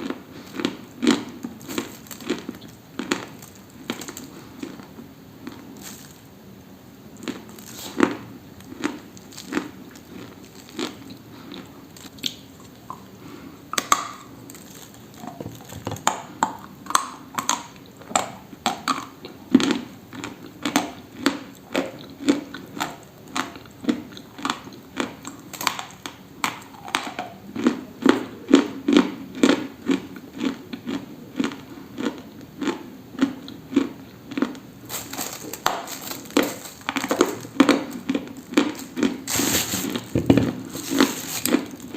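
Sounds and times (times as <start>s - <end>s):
dry brittle crunching: 0.6s - 6.3s, 7.2s - 12.9s, 13.8s - 16.2s, 34.4s - 41.9s.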